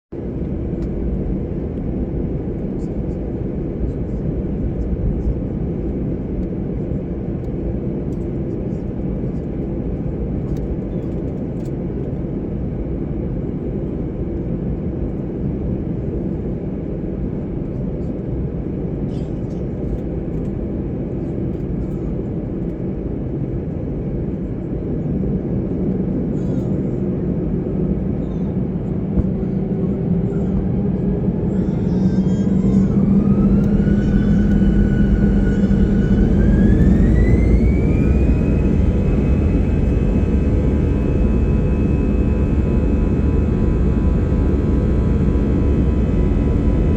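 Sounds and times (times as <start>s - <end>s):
airliner cabin rumble: 0.1s - 46.9s
jet engines spooling up: 28.9s - 46.9s.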